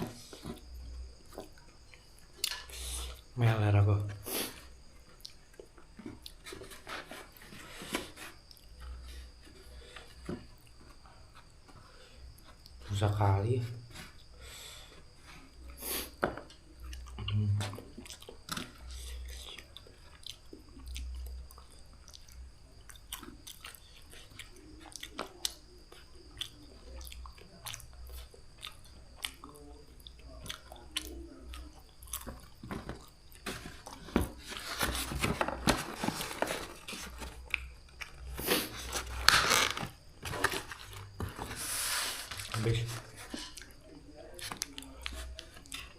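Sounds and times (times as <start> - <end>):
person chewing noodles: 17.8 - 18.4, 19.0 - 34.0, 43.4 - 43.8.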